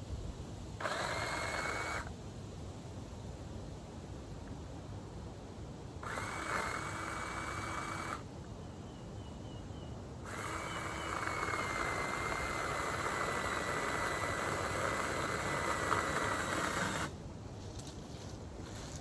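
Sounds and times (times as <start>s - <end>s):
power tool whirring: 0.8s - 2.1s, 6.0s - 8.2s, 10.3s - 17.2s.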